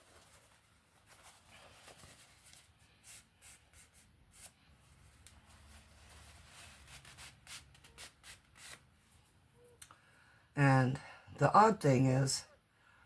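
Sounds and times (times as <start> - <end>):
paper towel rustling and wiping: 0.0 - 9.4.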